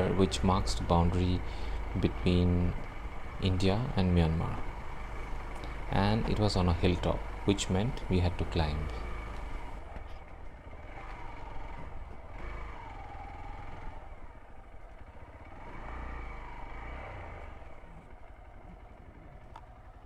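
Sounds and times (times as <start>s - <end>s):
steady low rumble: 0.0s - 9.8s
motorcycle engine riding along: 0.0s - 20.0s.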